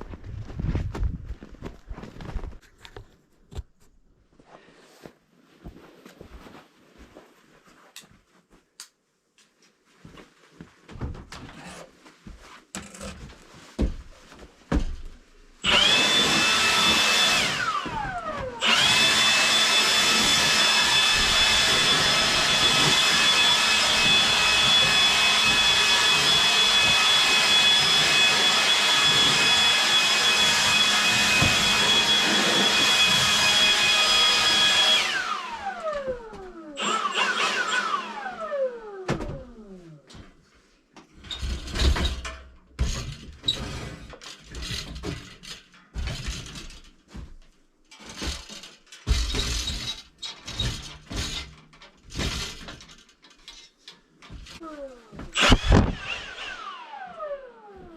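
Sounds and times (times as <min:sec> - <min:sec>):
power tool motor whining: 0:15.6 - 0:39.7, 0:54.7 - 0:57.9.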